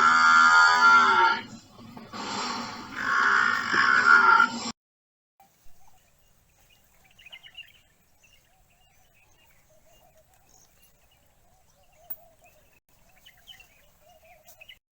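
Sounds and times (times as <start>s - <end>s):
bird chirps: 5.6s - 14.8s.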